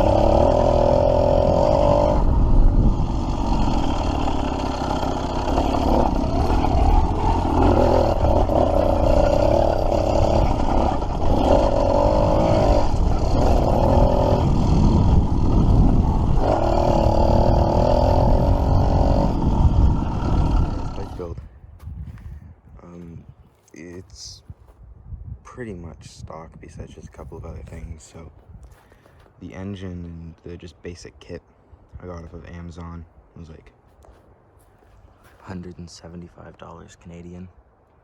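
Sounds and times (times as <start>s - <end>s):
two-stroke bike engine revving: 0.0s - 21.4s.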